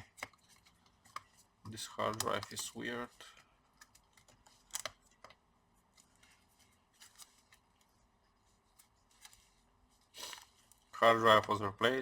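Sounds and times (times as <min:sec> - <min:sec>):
faint clicks of laptop parts: 0:00.0 - 0:08.0.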